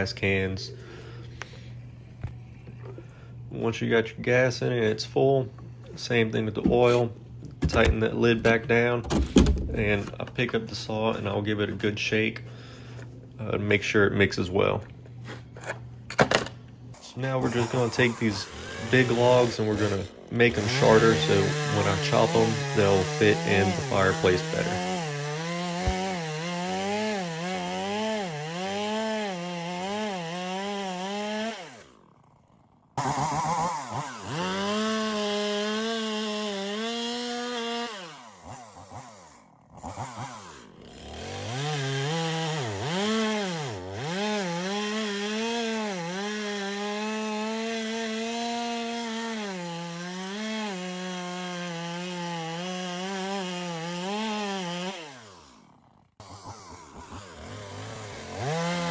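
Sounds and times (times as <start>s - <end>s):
chainsaw cutting a log: 16.9s - 58.9s.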